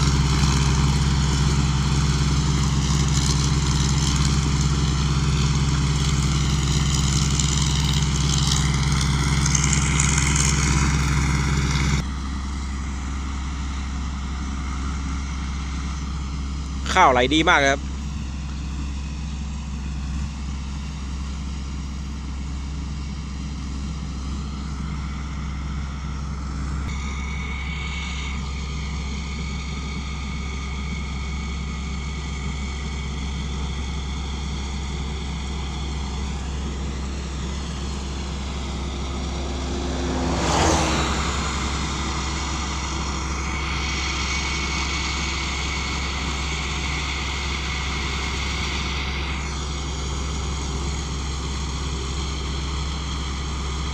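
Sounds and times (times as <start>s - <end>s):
combine harvester drone: 0.0s - 53.9s
loud rushing swell: 36.6s - 46.1s.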